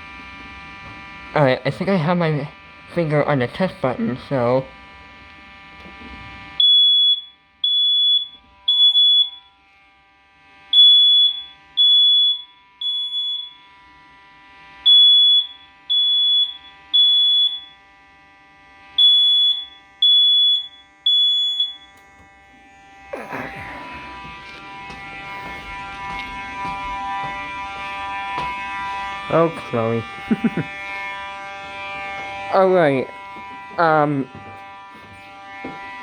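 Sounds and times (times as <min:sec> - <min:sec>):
smoke detector beeping: 0:06.6 - 0:09.5, 0:10.8 - 0:13.6, 0:14.9 - 0:17.8, 0:19.0 - 0:22.1.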